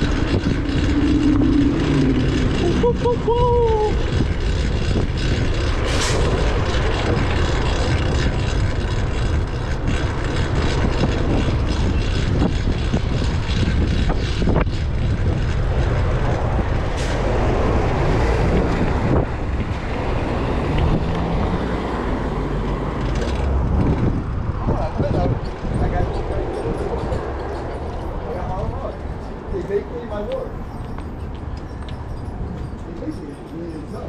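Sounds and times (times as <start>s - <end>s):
wind rush: 0.0s - 27.5s
road rumble: 0.0s - 34.0s
bicycle clicks and rattles: 23.0s - 24.2s.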